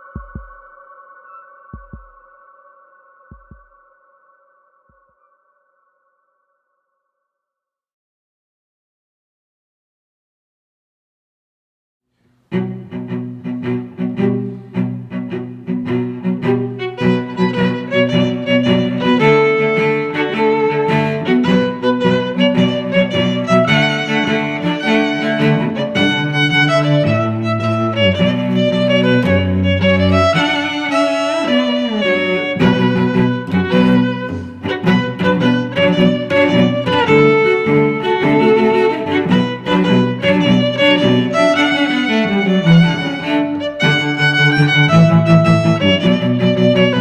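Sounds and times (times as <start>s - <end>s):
string music with violin and cello: 12.4s - 47.0s.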